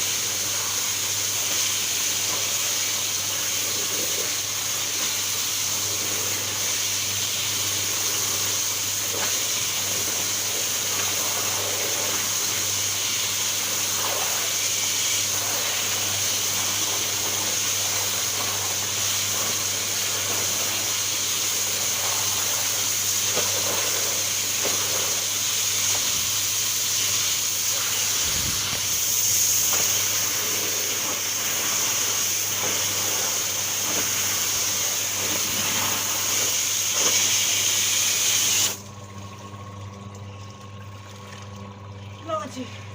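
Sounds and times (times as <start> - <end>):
washing machine running: 0.0 - 42.9.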